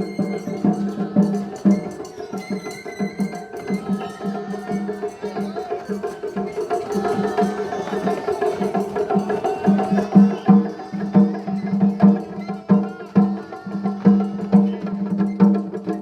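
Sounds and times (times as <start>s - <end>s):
flute notes: 0.0s - 16.0s
taiko drums: 0.0s - 16.0s.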